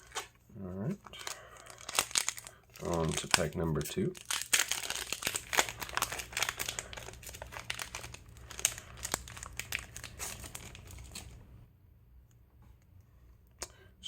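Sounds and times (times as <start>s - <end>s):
foil wrapper crinkling and tearing: 0.0s - 0.3s, 1.0s - 11.4s.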